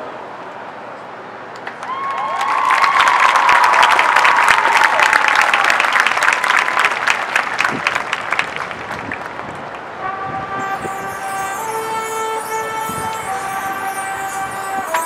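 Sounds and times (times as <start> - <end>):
crowd applauding and cheering: 1.6 - 15.0
band horns holding a chord: 10.0 - 15.0.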